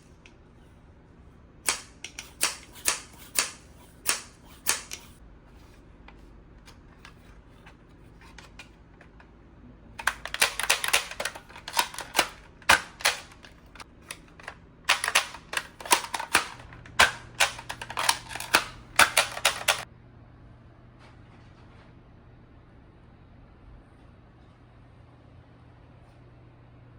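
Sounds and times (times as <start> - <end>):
toy gun clicking: 10.0 - 13.5, 14.1 - 19.8.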